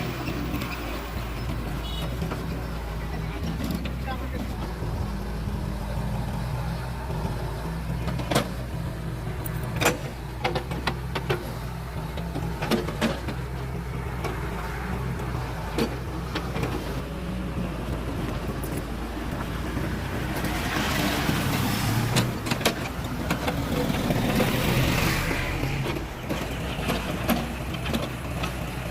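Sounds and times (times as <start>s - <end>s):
heavy engine running: 0.0s - 28.9s
sharp knocks and clanks: 9.4s - 14.4s, 20.2s - 28.6s.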